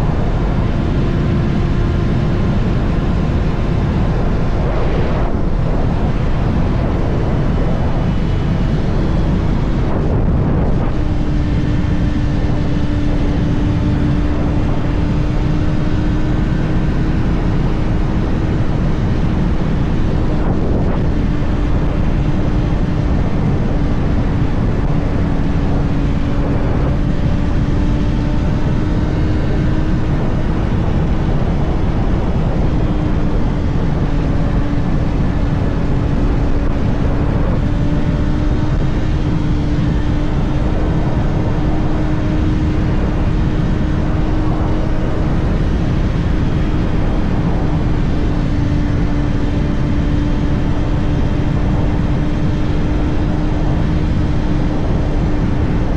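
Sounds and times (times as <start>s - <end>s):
motorcycle engine cruising: 0.0s - 55.9s
wind rumble on microphone: 0.0s - 55.9s.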